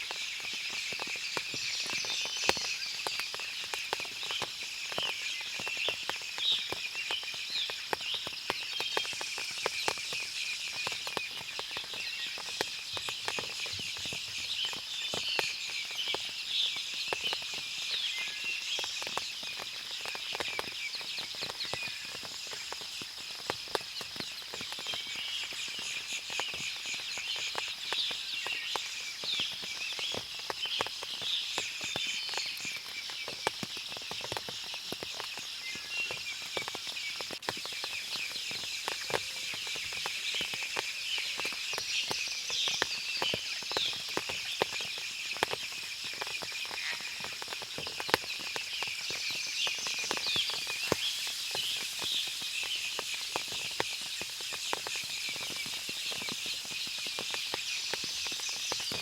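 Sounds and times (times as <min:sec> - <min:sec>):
steady high-pitched hiss: 0:00.0 - 0:59.0
water dripping from trees: 0:00.0 - 0:59.0.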